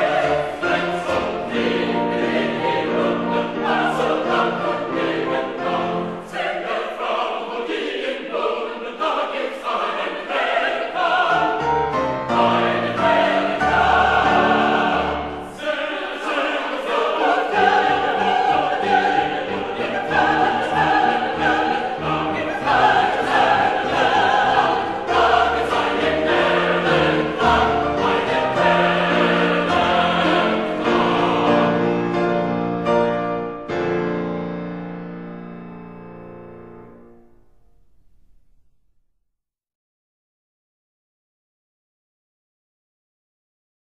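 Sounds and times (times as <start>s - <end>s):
choral singing: 0.0s - 34.3s.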